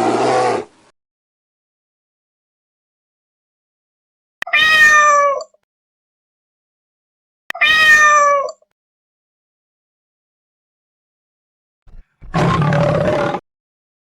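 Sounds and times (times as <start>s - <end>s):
cat meowing: 4.4s - 5.6s, 7.5s - 8.6s.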